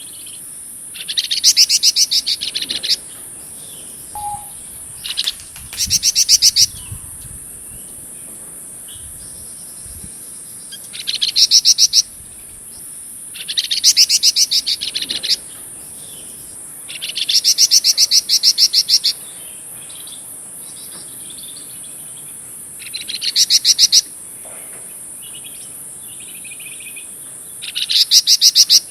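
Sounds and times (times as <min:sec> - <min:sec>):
steady high-pitched hiss: 0:00.0 - 0:28.9
faint bird calls: 0:03.7 - 0:06.7
songbird trilling: 0:04.1 - 0:07.0.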